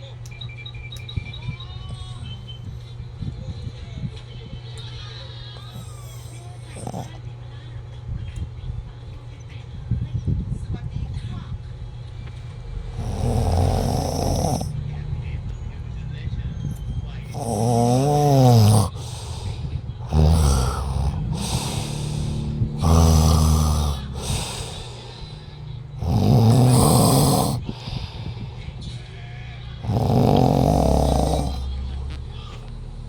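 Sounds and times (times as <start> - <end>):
breathy hiss: 5.6 - 7.2, 12.7 - 14.9, 16.8 - 33.0
loud snoring: 5.6 - 7.2, 12.7 - 16.0, 16.6 - 29.0, 29.8 - 33.0.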